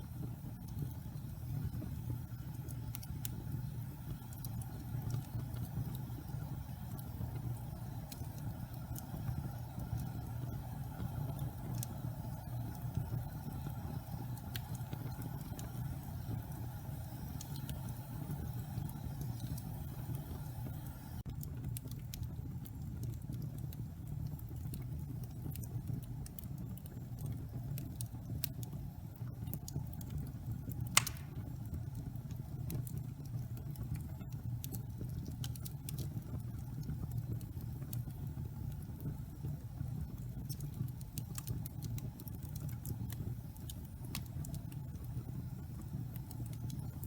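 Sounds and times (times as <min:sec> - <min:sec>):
fire crackling: 0:00.0 - 0:47.0
fire rumbling: 0:00.0 - 0:47.0
loud pop from fire: 0:30.9 - 0:31.6.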